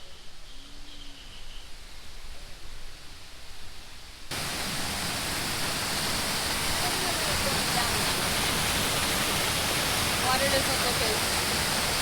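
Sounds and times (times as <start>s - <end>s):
faint outdoor ambience: 0.0s - 12.0s
waterfall rushing: 4.3s - 12.0s.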